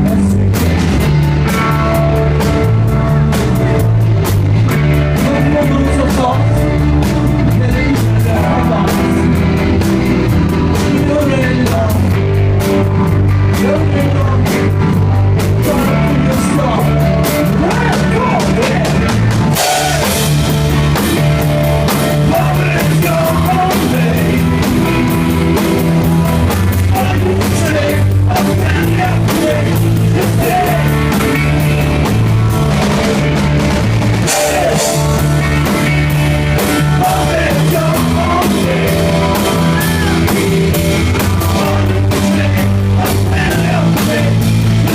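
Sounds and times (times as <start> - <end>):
drums: 0.0 - 44.9
electric guitar: 0.0 - 44.9
rock band playing: 0.0 - 44.9
person singing: 7.4 - 9.7, 10.6 - 12.3, 15.6 - 20.5, 22.2 - 25.2, 26.7 - 31.6, 34.2 - 44.9.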